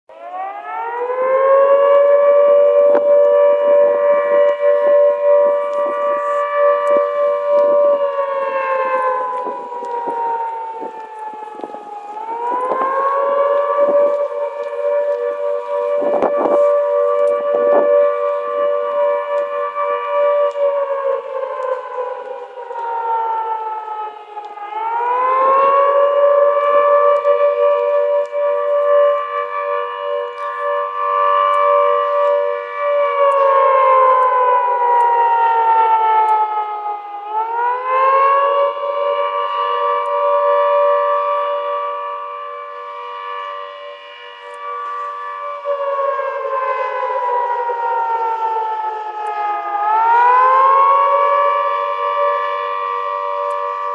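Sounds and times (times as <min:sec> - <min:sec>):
warning sirens wailing: 0:00.0 - 0:53.9.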